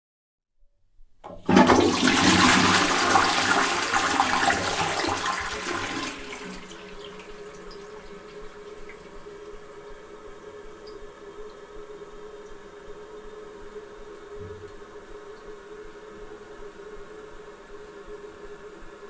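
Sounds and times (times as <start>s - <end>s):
toilet flush click: 1.2s - 9.3s
toilet water rushing: 1.2s - 9.6s
water running with faint tone: 1.2s - 19.0s.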